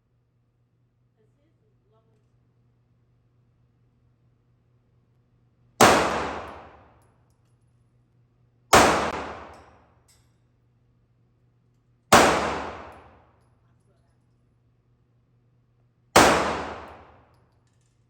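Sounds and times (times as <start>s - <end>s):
pistol shots echoing: 5.8s - 6.9s, 8.7s - 9.8s, 12.1s - 13.2s, 16.2s - 17.2s.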